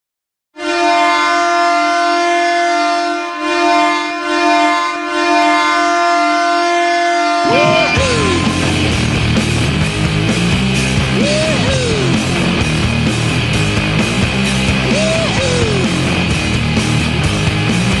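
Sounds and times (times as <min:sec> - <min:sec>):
arena goal horn blaring: 0:00.6 - 0:10.0
loud rock music: 0:07.4 - 0:18.0.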